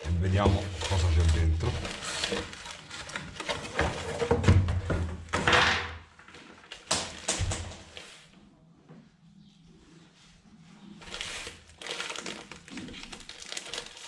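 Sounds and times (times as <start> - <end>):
cardboard parcel being opened: 0.0 - 5.6, 11.0 - 14.0.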